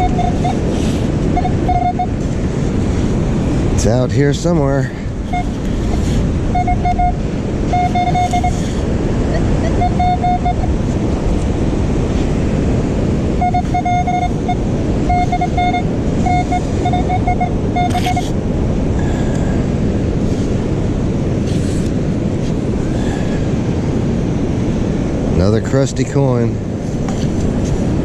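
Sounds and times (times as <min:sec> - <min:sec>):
metal detector beeps: 0:00.0 - 0:00.7, 0:01.3 - 0:02.2, 0:05.2 - 0:08.6, 0:09.3 - 0:10.8, 0:13.4 - 0:18.3
wind noise: 0:00.0 - 0:28.0.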